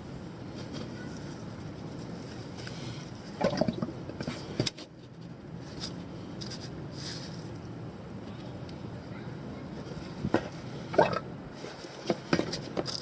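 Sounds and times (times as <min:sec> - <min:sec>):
low background noise: 0:00.0 - 0:13.0
scrape: 0:05.6 - 0:07.5, 0:11.6 - 0:12.6.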